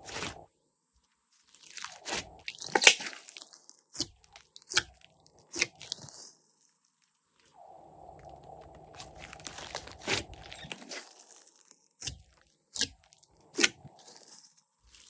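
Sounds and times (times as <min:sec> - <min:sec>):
slime squeezed crunchy pops: 0:01.8 - 0:04.9.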